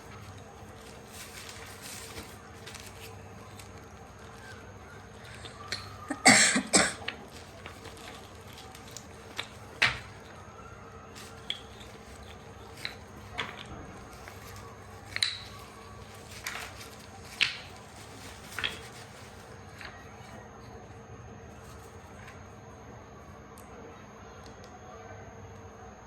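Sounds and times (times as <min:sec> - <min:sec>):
packaging rustling and crinkling: 0:00.0 - 0:20.8, 0:21.4 - 0:22.6
light tapping on packaging: 0:11.1 - 0:20.0.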